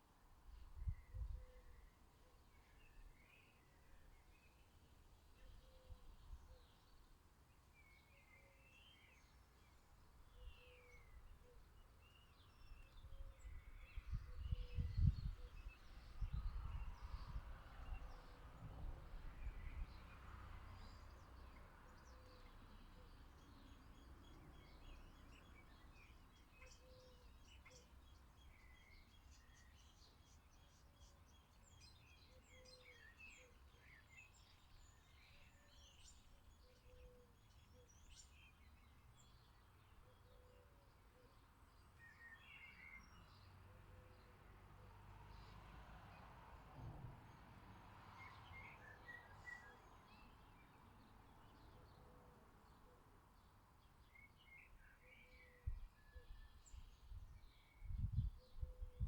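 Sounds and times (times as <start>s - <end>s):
small birds chirping: 48.2s - 59.0s.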